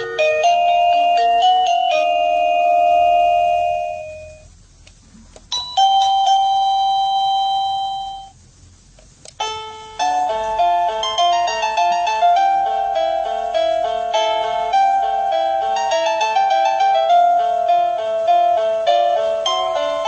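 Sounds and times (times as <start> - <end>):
electronic doorbell chime tunes: 0.0 - 4.5, 5.5 - 8.4, 9.4 - 20.0
two-note ding-dong chime: 5.5 - 8.3.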